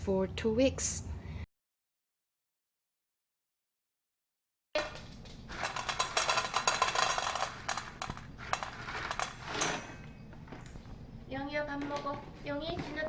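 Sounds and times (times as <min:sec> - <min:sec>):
dishes and utensils clinking: 0:04.8 - 0:10.2.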